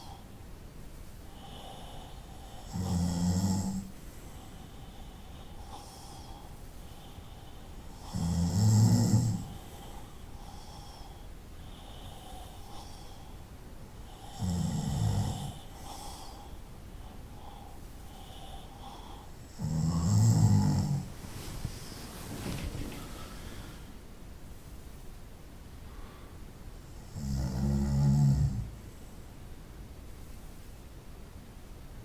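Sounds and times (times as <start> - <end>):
soft breaths: 0.0 - 27.2
loud low-pitched snores: 1.4 - 4.0, 7.9 - 10.9, 14.1 - 16.4, 19.5 - 21.1, 27.0 - 28.8.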